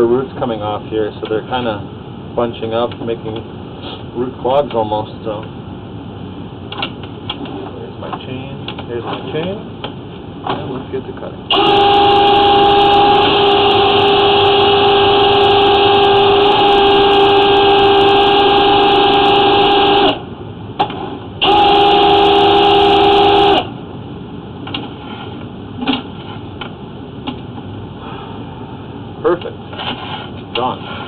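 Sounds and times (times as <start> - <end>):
drain-cleaning machine whining: 11.5 - 20.2, 21.4 - 23.7.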